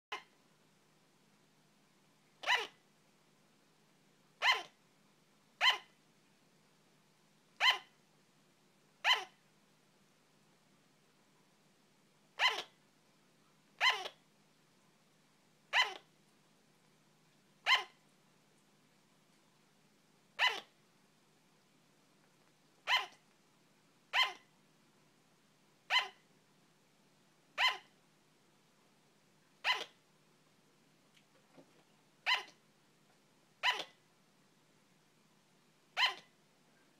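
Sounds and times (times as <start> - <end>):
sugar glider barking: 0.1 - 0.4, 2.4 - 2.8, 4.4 - 4.8, 5.6 - 6.0, 7.6 - 8.0, 9.0 - 9.4, 12.4 - 12.8, 13.8 - 14.2, 15.7 - 16.1, 17.6 - 18.0, 20.4 - 20.8, 22.8 - 23.2, 24.1 - 24.5, 25.9 - 26.3, 27.6 - 28.0, 29.6 - 30.0, 32.2 - 32.6, 33.6 - 34.0, 36.0 - 36.3.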